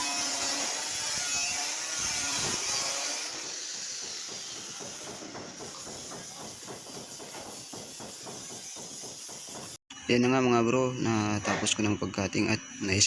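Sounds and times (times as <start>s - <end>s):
power cutting tool hissing on metal: 0.0s - 9.8s.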